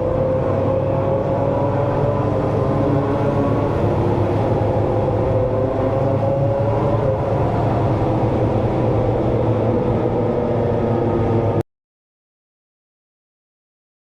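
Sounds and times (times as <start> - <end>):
motorcycle engine drone: 0.0 - 11.6.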